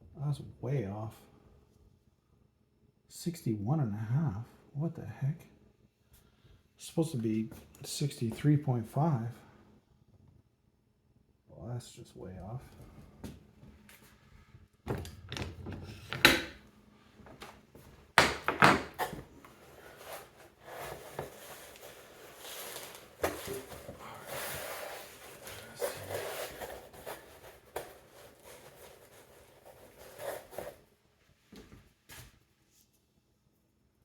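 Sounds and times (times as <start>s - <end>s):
rustling and scraping: 12.7s - 33.0s.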